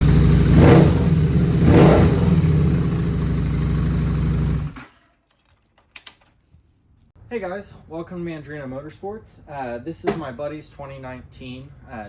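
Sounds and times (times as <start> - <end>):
engine revving: 0.0 - 4.8.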